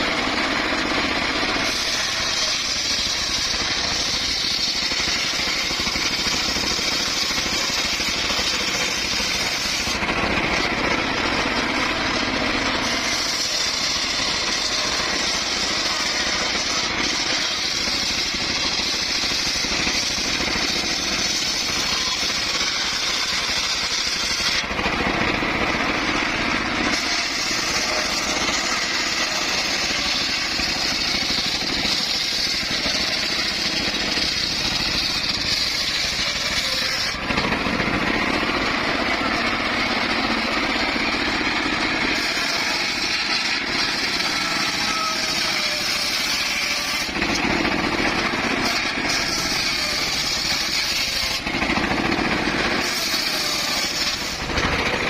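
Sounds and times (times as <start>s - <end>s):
circular saw cutting wood: 0.0s - 55.0s.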